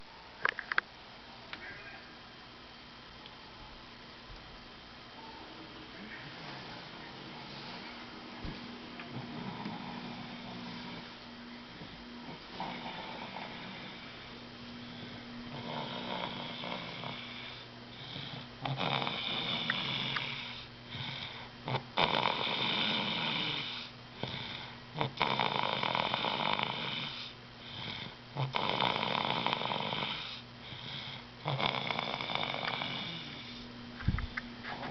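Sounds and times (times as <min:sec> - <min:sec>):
quiet breaths: 0:05.2 - 0:34.9
man snoring loudly: 0:12.2 - 0:14.2, 0:15.0 - 0:33.6.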